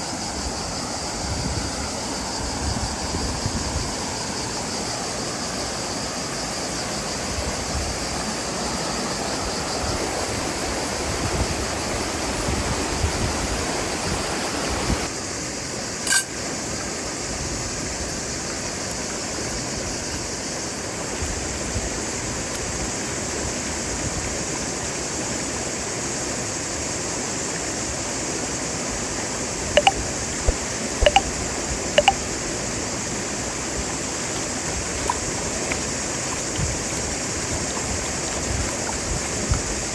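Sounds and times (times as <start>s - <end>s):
sharp click: 31.0s - 31.2s
short high-pitched sounds: 31.0s - 31.2s.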